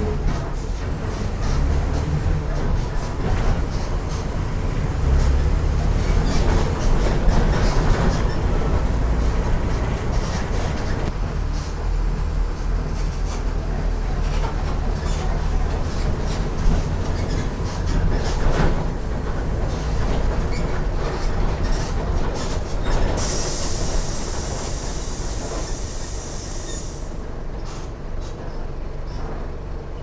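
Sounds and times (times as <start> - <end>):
bus diesel engine running: 0.0 - 30.0
high air hiss: 23.2 - 27.2.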